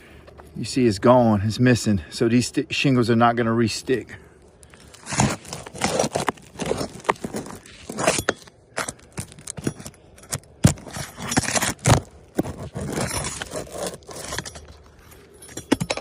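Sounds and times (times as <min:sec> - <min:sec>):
roof shingles scraping and rustling: 0:04.8 - 0:15.3.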